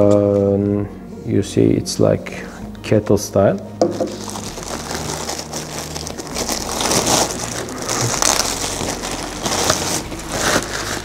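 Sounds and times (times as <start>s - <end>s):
packaging crinkling and rustling: 3.9s - 11.0s.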